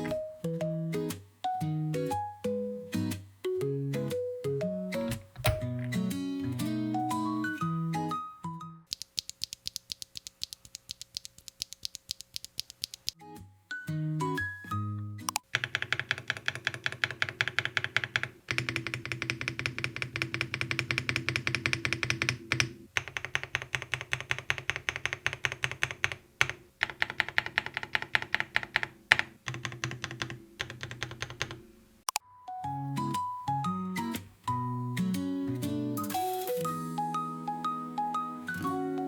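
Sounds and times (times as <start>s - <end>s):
background music: 0.0s - 8.9s, 13.2s - 15.5s, 32.2s - 39.0s
fast keyboard typing: 15.3s - 31.6s.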